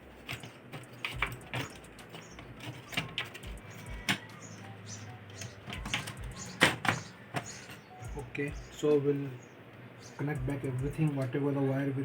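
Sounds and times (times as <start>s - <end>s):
hands handling electronic parts: 0.0s - 9.1s.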